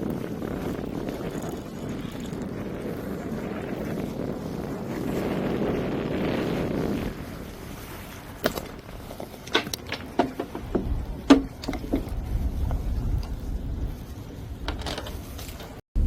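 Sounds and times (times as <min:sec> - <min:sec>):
wind rushing on microphone: 0:00.0 - 0:16.0
sharp knocks and clicks: 0:09.4 - 0:12.2
low rumble: 0:10.4 - 0:16.0.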